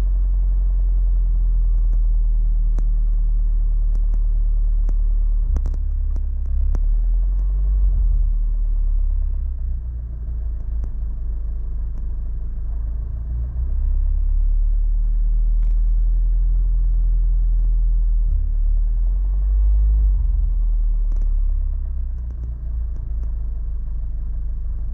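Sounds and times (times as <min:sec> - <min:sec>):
faint engine ticks: 0:00.0 - 0:14.3, 0:19.7 - 0:24.9
car engine low rumble: 0:00.0 - 0:24.9.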